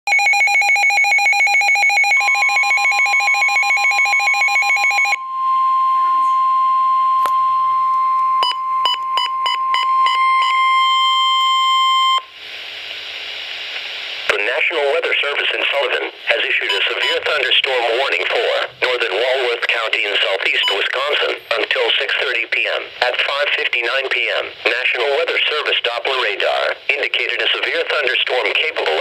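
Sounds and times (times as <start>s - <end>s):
pulsing electronic alarm beeps: 0.1s - 12.3s
short beeps: 0.1s - 12.3s
steady warning alarm tone: 0.1s - 12.3s
radio hiss: 12.3s - 29.0s.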